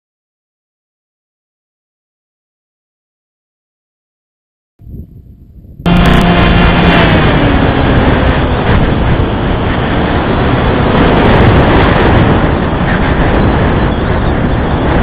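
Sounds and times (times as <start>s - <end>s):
wind rushing noise: 4.8s - 15.0s
faint motor whine: 5.9s - 11.0s.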